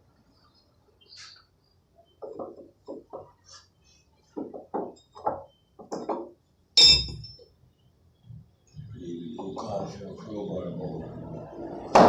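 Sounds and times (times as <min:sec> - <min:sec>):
metal clank ringing: 0:06.8 - 0:07.4.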